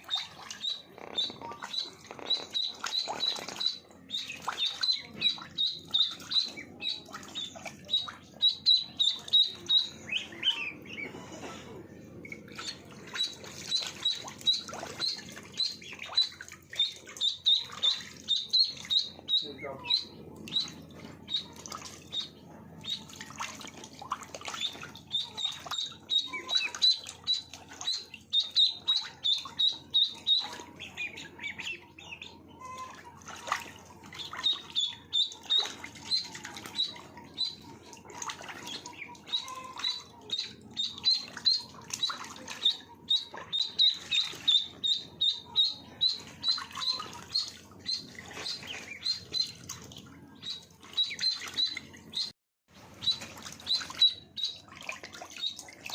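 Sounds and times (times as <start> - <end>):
ducklings peeping: 0.0 - 52.3, 52.9 - 55.9.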